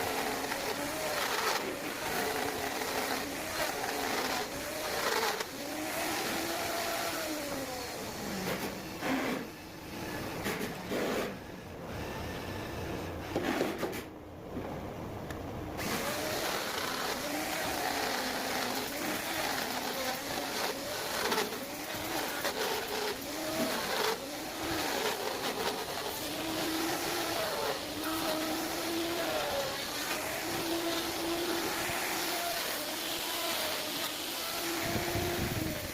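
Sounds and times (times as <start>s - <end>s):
power tool cutting wood: 0.0s - 11.4s, 15.8s - 35.9s.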